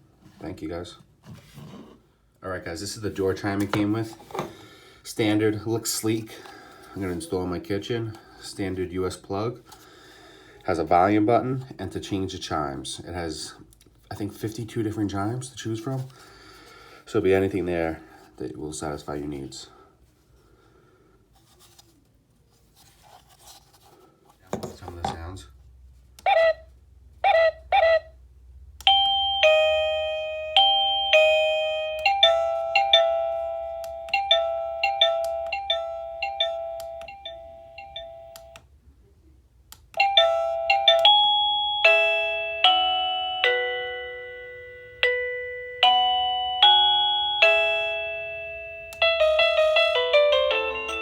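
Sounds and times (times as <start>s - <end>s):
doorbell chime tunes: 28.8s - 38.6s, 40.0s - 51.0s.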